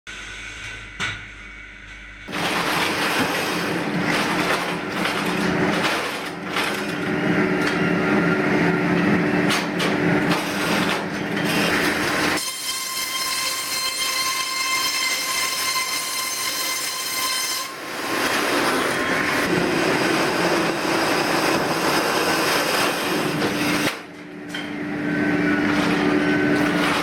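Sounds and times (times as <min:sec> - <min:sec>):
circular saw cutting wood: 0:10.3 - 0:24.0
saw blade high whine: 0:11.5 - 0:24.0.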